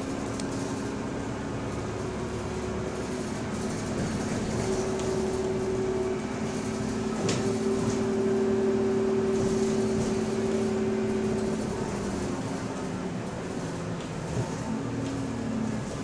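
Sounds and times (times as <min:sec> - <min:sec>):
bus running on road: 0:00.0 - 0:16.0.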